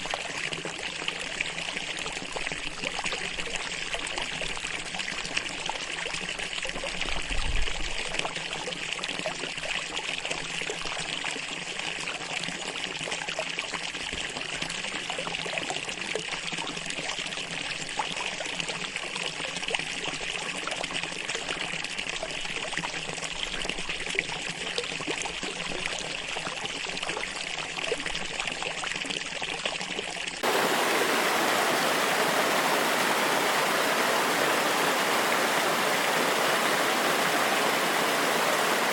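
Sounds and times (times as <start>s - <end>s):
running water rushing: 30.4s - 38.9s.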